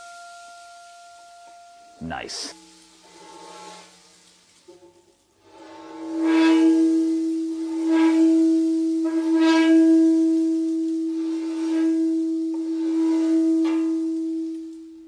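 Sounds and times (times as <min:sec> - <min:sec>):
sustained steady tone: 0:06.1 - 0:15.0.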